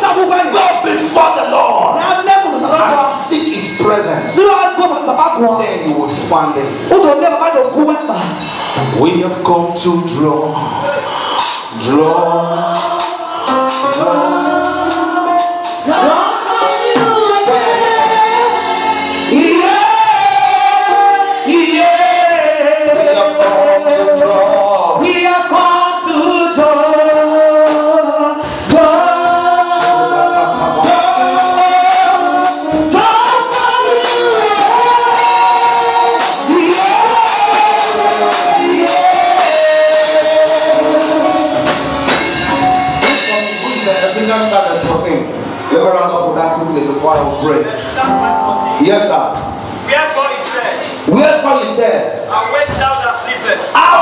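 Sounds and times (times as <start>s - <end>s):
group singing gospel song: 0.0s - 52.5s, 53.2s - 54.0s
instrumental accompaniment: 0.0s - 54.0s
sharp percussion strikes: 28.6s - 45.8s.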